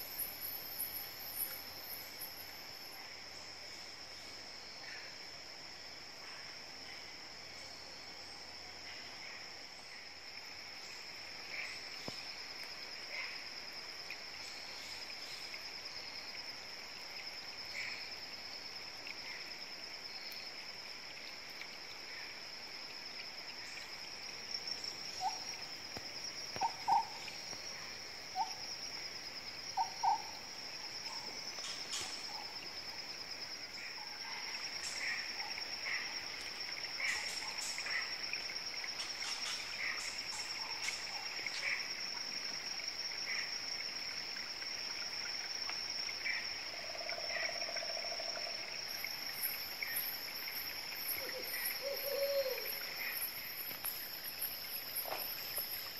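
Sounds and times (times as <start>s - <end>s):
high-pitched insect drone: 0.0s - 3.2s, 22.8s - 55.9s
insects chirping: 0.0s - 55.9s.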